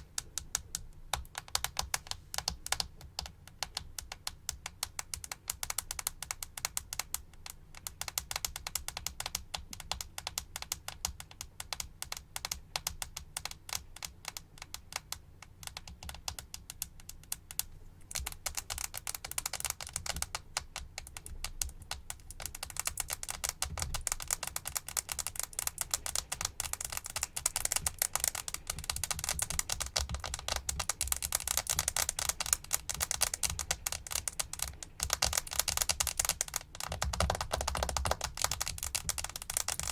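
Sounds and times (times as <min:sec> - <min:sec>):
fast tapping clicks: 0:00.0 - 0:39.9.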